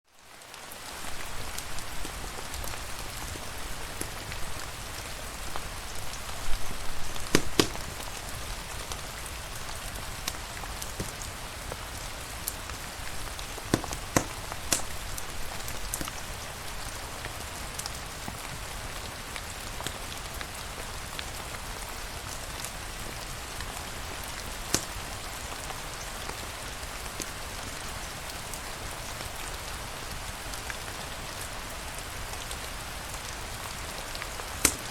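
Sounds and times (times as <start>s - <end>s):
steady rain falling: 0.1s - 34.9s
sharp clicks: 7.3s - 7.9s, 13.7s - 15.1s, 34.6s - 34.9s.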